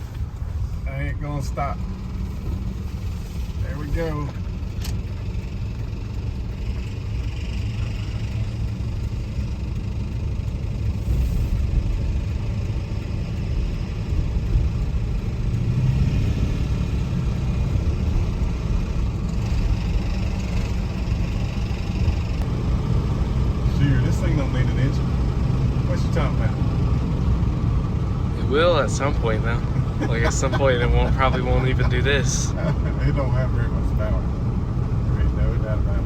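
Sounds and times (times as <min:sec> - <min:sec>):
road noise: 0:00.0 - 0:36.0
truck engine rumble: 0:00.0 - 0:36.0.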